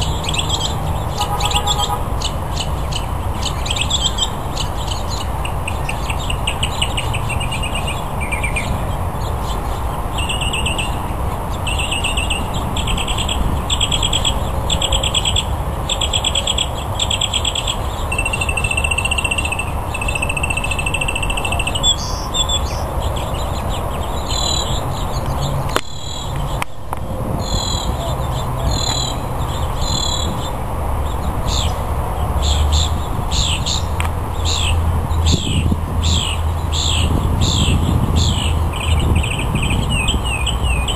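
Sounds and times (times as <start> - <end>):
mockingbird singing: 0.0 - 26.6.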